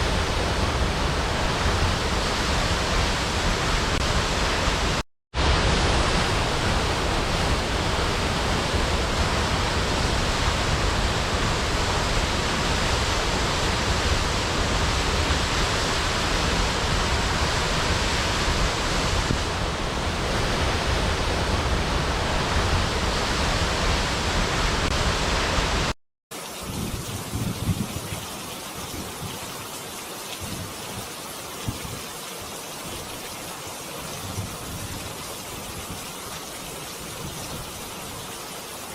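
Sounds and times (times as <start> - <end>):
flowing water rushing: 0.0 - 38.9.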